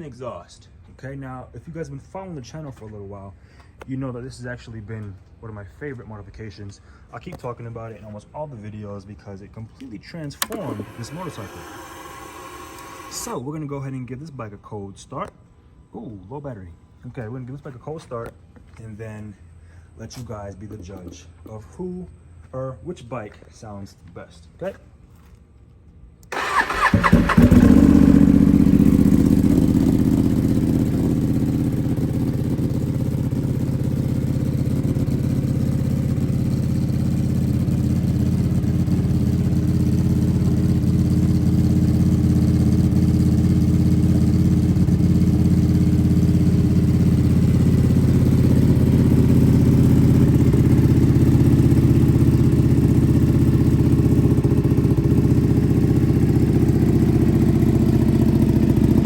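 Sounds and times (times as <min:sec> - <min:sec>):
starter motor cranking: 0:10.3 - 0:13.4, 0:26.3 - 0:28.9
motorcycle engine idling: 0:26.4 - 0:59.0.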